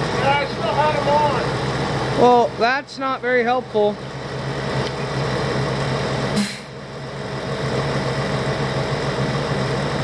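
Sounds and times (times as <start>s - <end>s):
engine idling: 0.0s - 10.0s
short sharp click: 6.4s - 6.7s.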